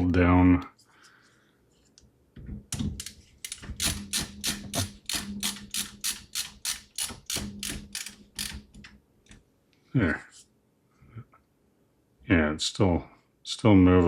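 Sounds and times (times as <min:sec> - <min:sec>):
screwdriver clicking: 0:03.0 - 0:08.9.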